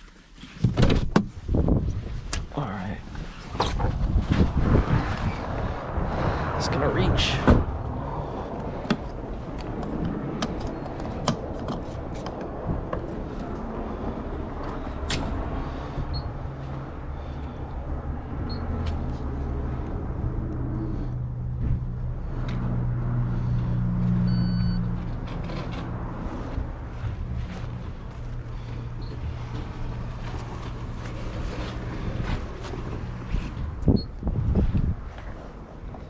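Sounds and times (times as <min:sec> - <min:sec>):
vehicle engines rumbling: 0:01.3 - 0:36.0
sharp clicks and knocks: 0:08.8 - 0:13.1.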